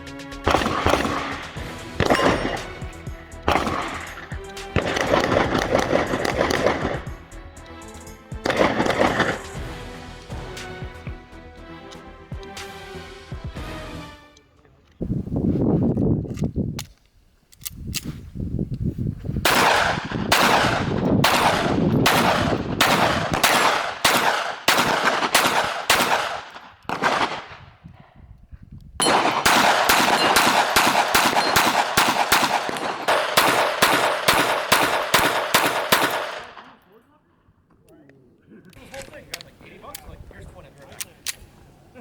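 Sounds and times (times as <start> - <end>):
suppressed pistol shots: 0.5 - 2.9, 3.5 - 7.2, 8.4 - 9.6, 19.5 - 27.6, 29.0 - 36.7.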